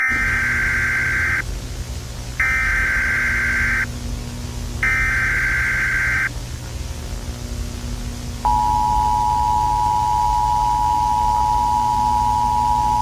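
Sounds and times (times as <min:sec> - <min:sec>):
steady two-tone attention signal: 0:00.0 - 0:01.5, 0:02.4 - 0:04.0, 0:04.6 - 0:06.3, 0:08.4 - 0:13.0
data burst tones: 0:00.0 - 0:13.0
low hum and static: 0:00.0 - 0:13.0.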